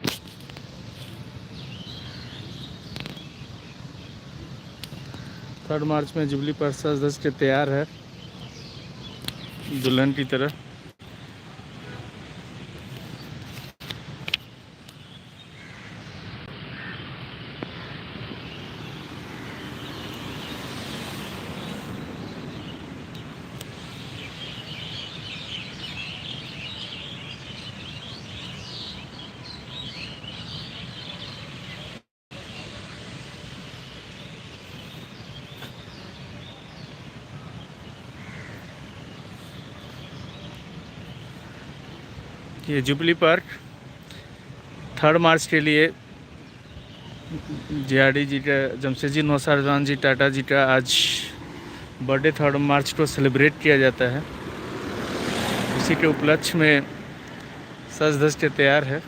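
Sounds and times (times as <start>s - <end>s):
outdoor background noise: 0.0s - 59.0s
faint short bird calls: 38.2s - 38.7s.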